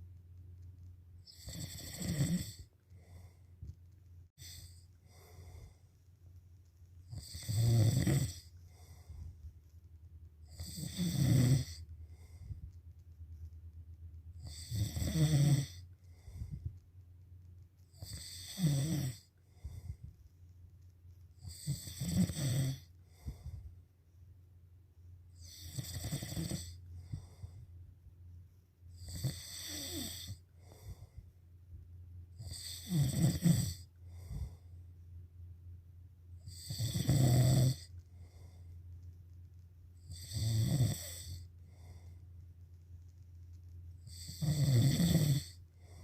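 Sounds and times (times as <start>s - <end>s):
steady low hum: 0.0s - 46.0s
person snoring: 1.3s - 2.7s, 7.1s - 9.1s, 10.5s - 12.3s, 14.4s - 15.8s, 18.0s - 19.3s, 21.4s - 23.4s, 25.4s - 27.3s, 29.0s - 31.0s, 32.4s - 34.5s, 36.4s - 37.9s, 40.0s - 41.5s, 44.1s - 46.0s.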